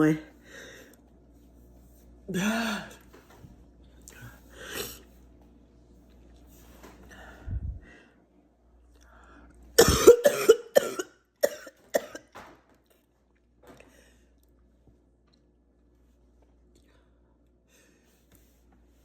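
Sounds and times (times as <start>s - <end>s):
woman hacking coughs: 9.8s - 12.3s.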